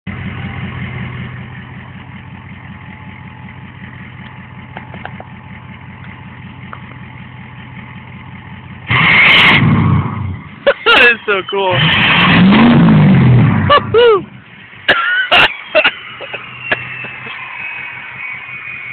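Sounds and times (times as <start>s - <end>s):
diesel engine idling clatter: 0.1s - 18.9s
engine revving: 8.8s - 18.9s
turbo whistle: 15.3s - 18.9s.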